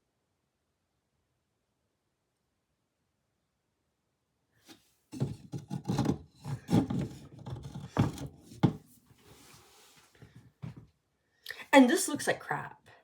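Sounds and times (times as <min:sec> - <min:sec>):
wood knocking and clattering: 0:05.2 - 0:08.9
wood scraping and rubbing: 0:05.2 - 0:10.8.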